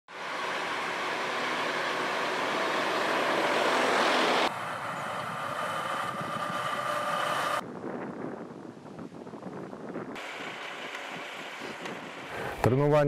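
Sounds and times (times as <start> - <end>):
roar with high whine: 0.1 - 7.6.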